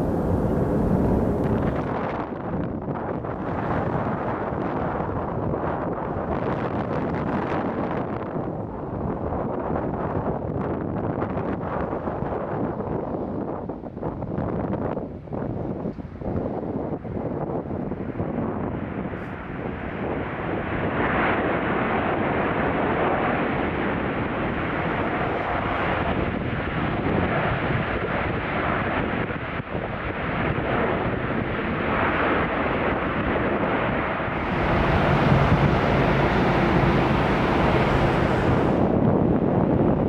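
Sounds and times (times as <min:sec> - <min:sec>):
steady low hum: 0:00.0 - 0:01.9, 0:34.4 - 0:40.0
jet engines running: 0:00.0 - 0:02.0, 0:34.3 - 0:40.0
wind buffeting microphone: 0:00.0 - 0:40.0.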